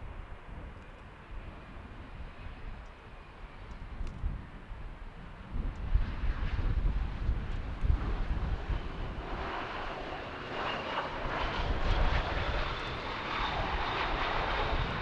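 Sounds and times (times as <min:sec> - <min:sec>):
wind buffeting microphone: 0:00.0 - 0:15.0
jet engines roaring: 0:07.0 - 0:15.0.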